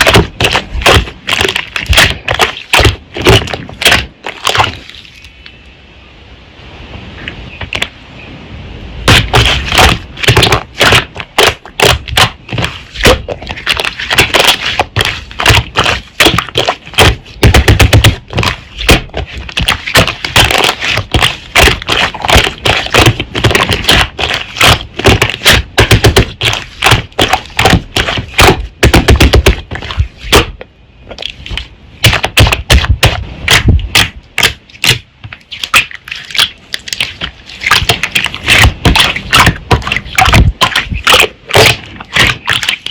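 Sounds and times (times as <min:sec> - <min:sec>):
slime crackling and popping: 0:09.1 - 0:29.6.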